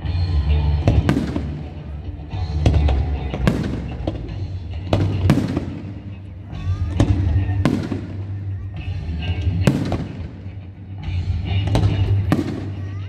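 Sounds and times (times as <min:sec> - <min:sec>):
fireworks bangs: 0:00.7 - 0:08.5, 0:09.6 - 0:10.6, 0:11.6 - 0:13.0.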